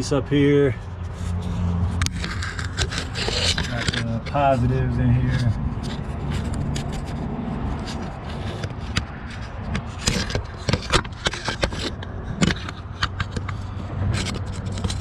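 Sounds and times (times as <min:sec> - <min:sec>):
metal tools clinking and scraping: 0:00.7 - 0:07.2.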